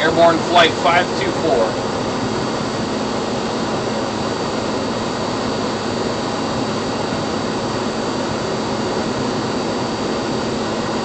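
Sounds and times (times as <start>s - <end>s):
turbine roar with high whine: 0.0s - 11.0s.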